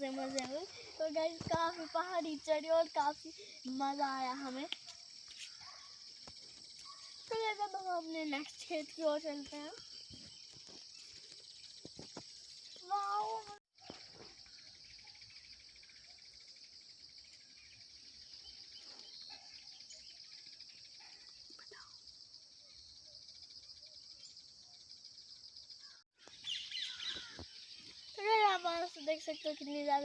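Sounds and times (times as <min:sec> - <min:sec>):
insects chirring: 0:00.0 - 0:30.0
bird chirps: 0:08.2 - 0:29.8.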